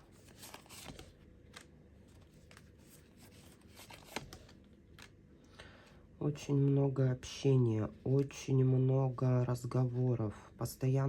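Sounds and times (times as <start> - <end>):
cards rustling: 0.0 - 5.2.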